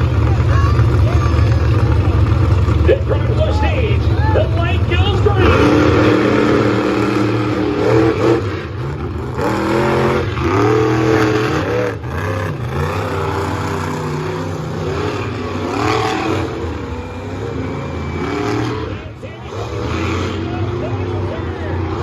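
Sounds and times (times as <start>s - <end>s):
monster truck engines revving: 0.0s - 22.0s.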